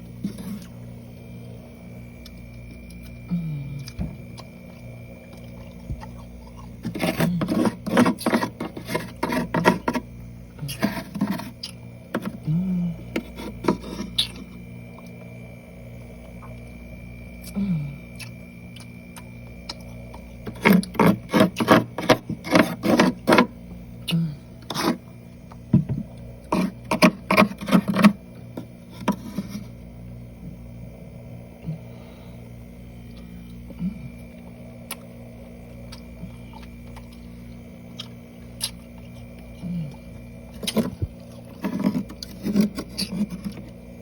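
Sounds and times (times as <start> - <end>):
chewing frost crunches: 2.2 - 7.4, 33.0 - 43.8.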